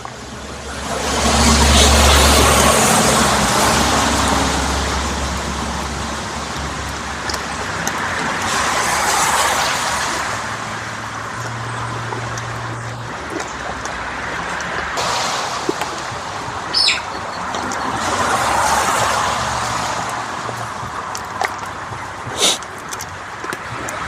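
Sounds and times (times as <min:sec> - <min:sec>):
low engine hum: 0:00.0 - 0:24.0
tyres hissing on wet road: 0:00.0 - 0:24.0.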